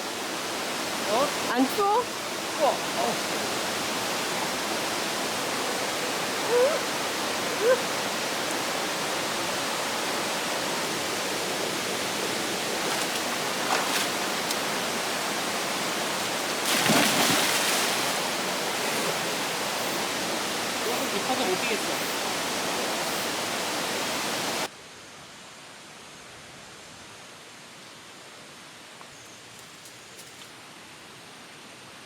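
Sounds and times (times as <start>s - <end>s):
stream rushing over rocks: 0.0s - 24.7s.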